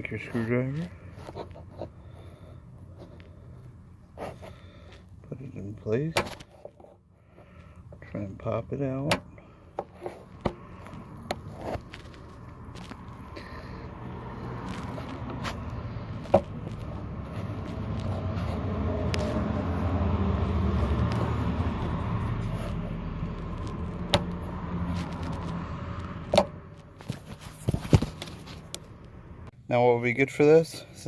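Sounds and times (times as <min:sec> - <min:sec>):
vehicle passing by: 0:10.3 - 0:29.5.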